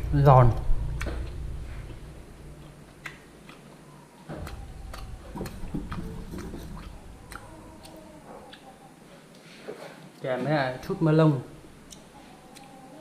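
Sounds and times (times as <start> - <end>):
person chewing: 0.8 - 9.5, 11.8 - 12.9.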